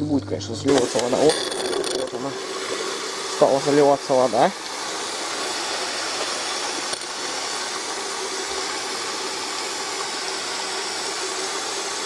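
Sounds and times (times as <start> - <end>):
faint constant hum: 0.0 - 10.9
dishwasher filling with water: 0.1 - 12.0.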